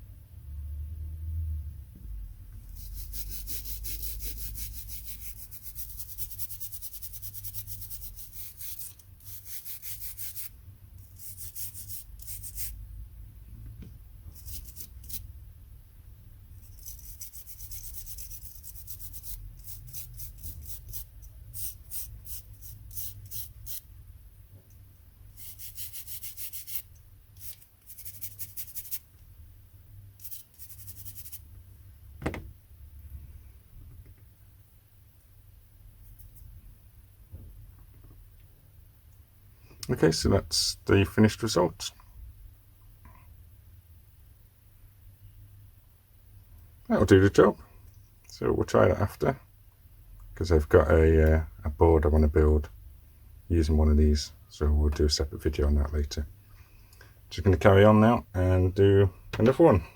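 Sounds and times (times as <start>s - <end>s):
toothbrush scrubbing circuit board: 2.7s - 12.8s, 14.3s - 15.2s, 16.6s - 23.8s, 25.3s - 29.0s, 30.2s - 31.4s.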